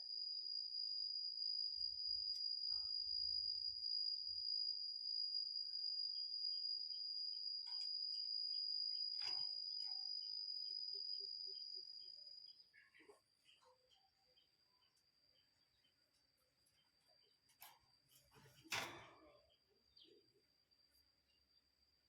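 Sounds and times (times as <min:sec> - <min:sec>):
faint bird chirps: 0:07.6 - 0:21.8.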